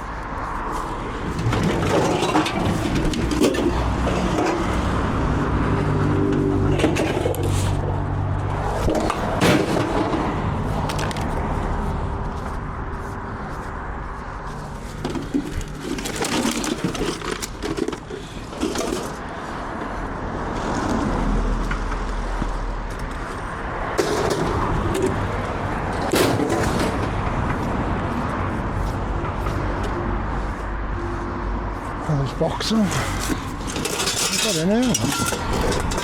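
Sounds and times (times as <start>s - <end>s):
knocks and clatter: 1.2s - 5.0s, 6.3s - 11.4s, 14.8s - 19.2s, 23.9s - 27.8s, 33.2s - 36.0s.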